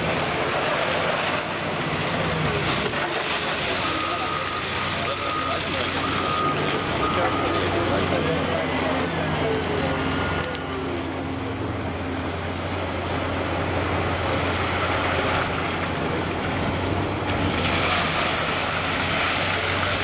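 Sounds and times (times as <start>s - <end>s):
excavator diesel engine droning: 0.0s - 20.0s.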